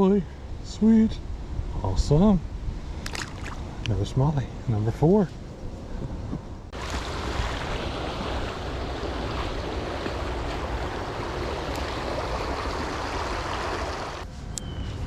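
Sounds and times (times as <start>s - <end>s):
water rushing over rocks: 6.8s - 14.2s.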